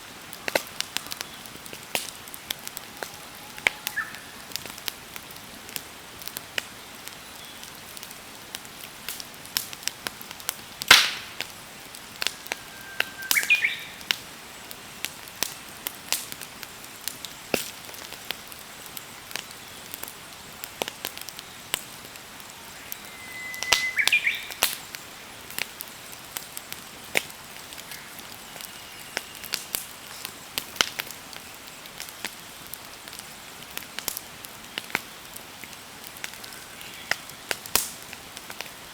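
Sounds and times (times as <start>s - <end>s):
campfire crackling and popping: 0.0s - 38.9s
bird calling: 3.4s - 4.4s, 12.4s - 14.2s, 22.7s - 24.8s.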